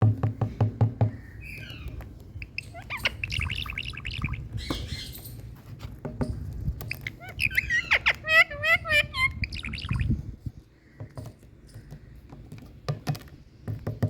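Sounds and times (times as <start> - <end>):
parrot calling: 1.4 - 5.4, 6.9 - 10.2.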